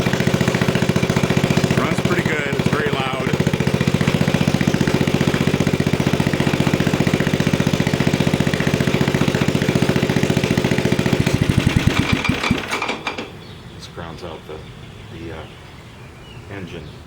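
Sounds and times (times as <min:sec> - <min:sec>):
small engine running loudly: 0:00.0 - 0:13.3.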